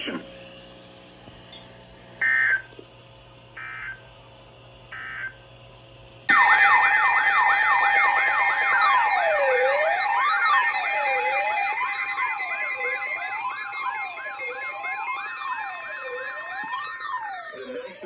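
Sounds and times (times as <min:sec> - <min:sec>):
buzzy data bursts: 0:06.3 - 0:18.0
electronic sirens wailing: 0:06.3 - 0:18.0.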